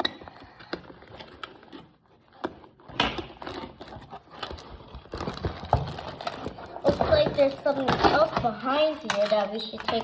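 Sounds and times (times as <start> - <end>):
packaging rustling: 0.0 - 10.0.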